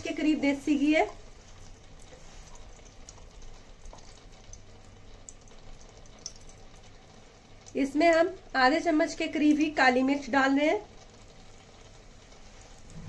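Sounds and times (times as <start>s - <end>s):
ghee crackling in pan: 0.0s - 13.0s.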